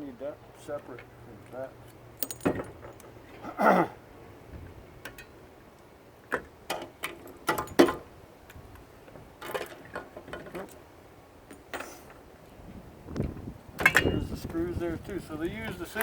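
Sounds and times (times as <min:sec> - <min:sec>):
metal parts and tools clicking: 0:02.2 - 0:03.1.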